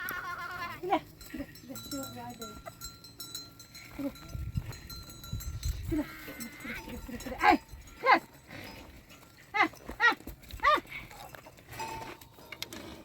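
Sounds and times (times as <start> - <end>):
sheep and goats bleating: 0.0 - 2.0, 5.1 - 12.0.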